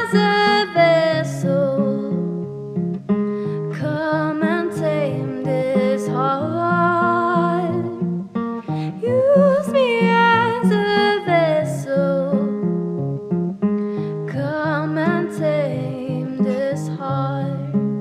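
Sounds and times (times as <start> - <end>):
person singing with vibrato: 0.0 - 2.2, 3.7 - 8.1, 8.7 - 12.6, 14.3 - 17.8
acoustic guitar strumming: 0.0 - 18.0.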